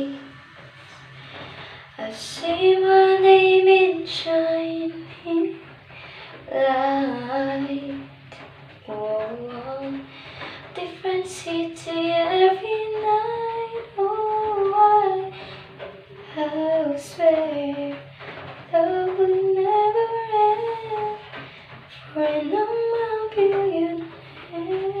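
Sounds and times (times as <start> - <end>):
woman singing pop melody: 2.0 - 5.6, 6.5 - 8.1, 10.7 - 15.5, 16.3 - 18.0, 22.0 - 25.0.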